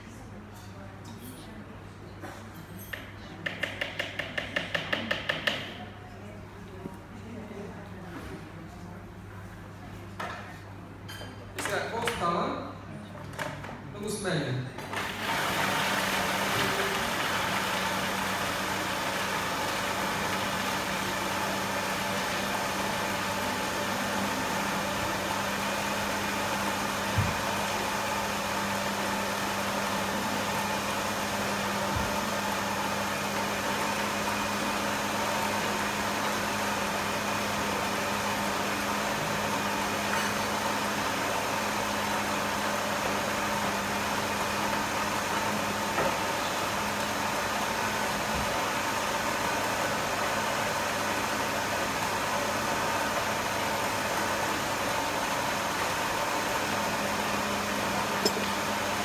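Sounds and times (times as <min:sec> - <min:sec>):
food processor motor humming: 0:14.8 - 0:59.0.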